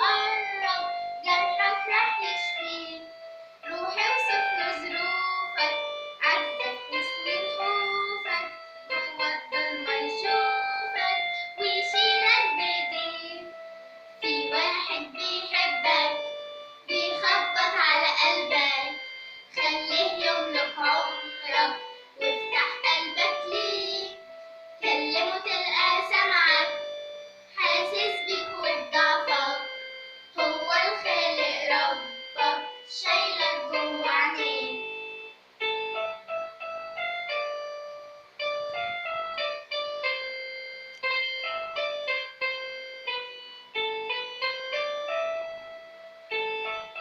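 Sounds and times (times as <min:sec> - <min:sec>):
girl singing: 0:00.0 - 0:35.4
electric keyboard melody: 0:00.0 - 0:47.0.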